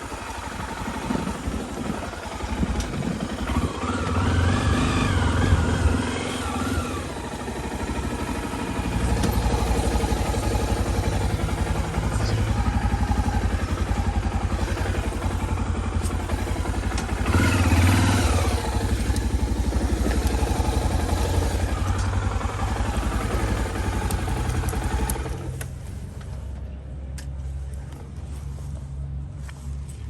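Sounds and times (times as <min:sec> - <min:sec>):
low hum: 0:00.0 - 0:30.0
motorcycle engine running: 0:00.0 - 0:30.0
clicks: 0:07.6 - 0:28.1.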